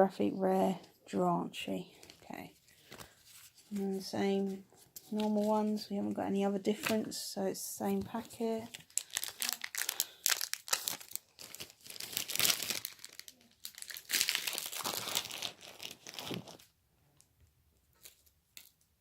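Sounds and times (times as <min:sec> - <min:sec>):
foil wrapper crinkling and tearing: 0:08.3 - 0:16.7, 0:18.0 - 0:18.9.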